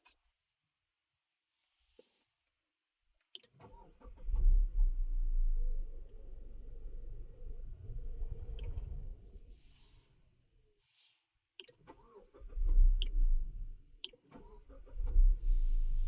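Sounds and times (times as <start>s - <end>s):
low engine rumbling: 4.0s - 10.3s, 12.4s - 14.0s, 14.7s - 16.0s.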